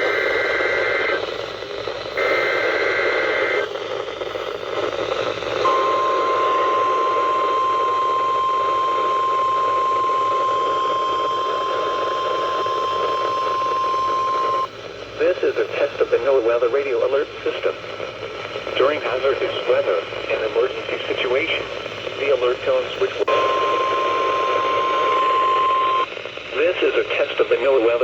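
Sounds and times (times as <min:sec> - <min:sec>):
radio static hiss: 0:00.0 - 0:28.0
steady warning alarm tone: 0:02.2 - 0:03.7, 0:05.6 - 0:14.7, 0:23.3 - 0:26.1
buzzy two-tone data bursts: 0:05.7 - 0:14.7.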